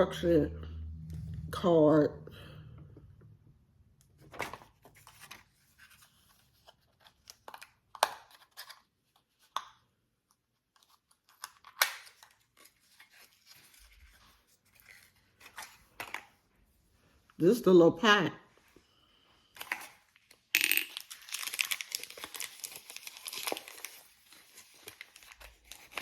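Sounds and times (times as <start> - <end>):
packaging crinkling and rustling: 19.5 - 26.0
packaging tearing: 20.8 - 26.0.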